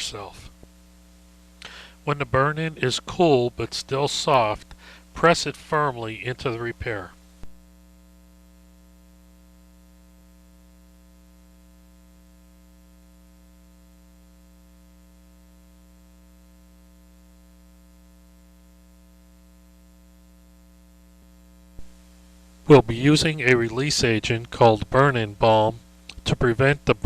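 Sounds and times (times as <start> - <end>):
faint hiss: 0.0 - 7.6
low electrical hum: 0.0 - 27.0.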